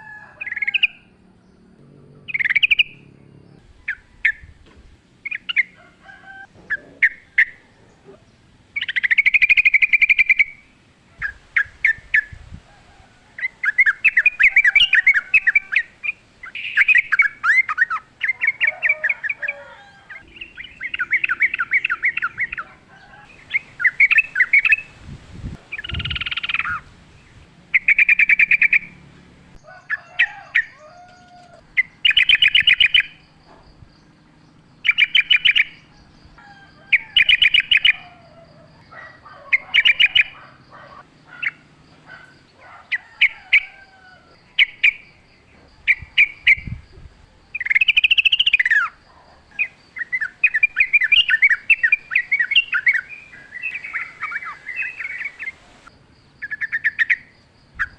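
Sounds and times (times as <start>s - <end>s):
bird singing bubbling phrases: 2.0s - 3.0s, 5.2s - 5.8s, 6.6s - 12.4s, 13.4s - 29.3s, 31.8s - 33.5s, 34.6s - 36.1s, 45.8s - 57.9s
short bird calls: 2.0s - 33.9s.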